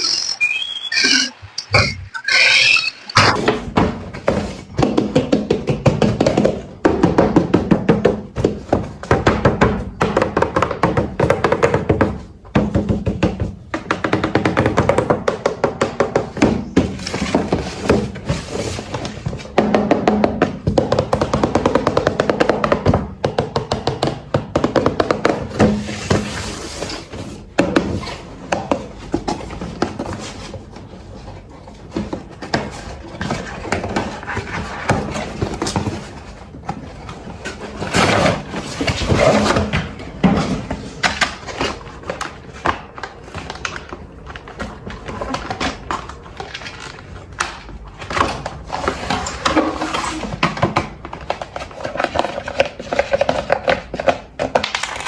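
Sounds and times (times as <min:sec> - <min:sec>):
cardboard and plastic rustling: 0:16.5 - 0:19.6, 0:25.2 - 0:55.0.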